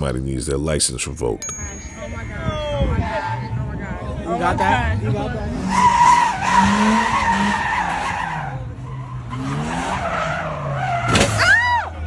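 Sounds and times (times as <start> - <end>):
car engine revving: 3.3 - 11.5.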